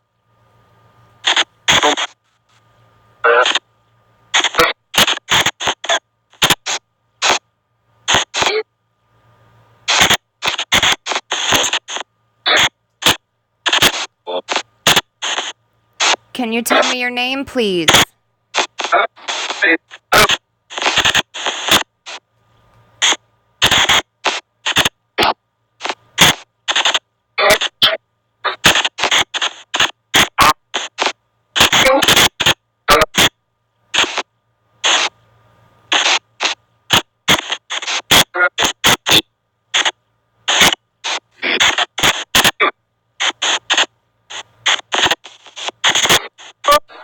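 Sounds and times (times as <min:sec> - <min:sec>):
chopped voice-like fragments: 0:16.4 - 0:18.0.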